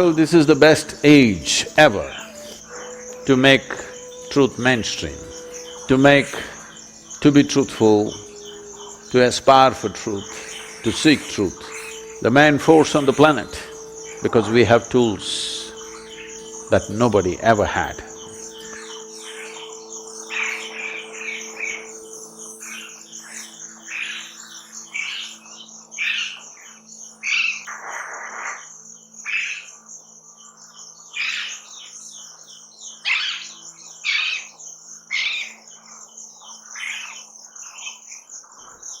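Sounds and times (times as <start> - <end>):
high insect trill: 0.0 - 39.0
songbirds chirping: 0.0 - 39.0
faint low held tones: 0.6 - 24.6.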